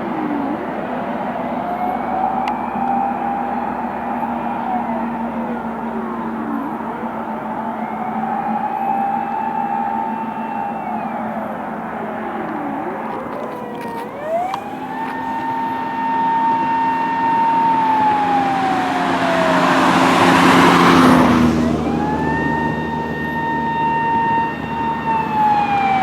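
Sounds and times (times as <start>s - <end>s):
emergency siren wailing: 0.0s - 26.0s
vehicle passing rush: 0.0s - 26.0s.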